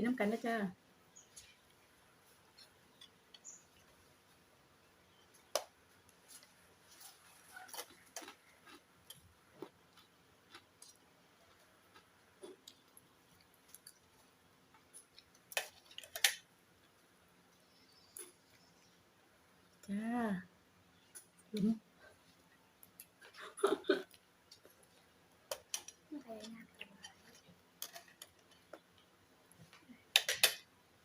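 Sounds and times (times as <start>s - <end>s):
person eating with utensils: 7.0s - 17.0s, 24.0s - 29.2s, 30.0s - 30.7s.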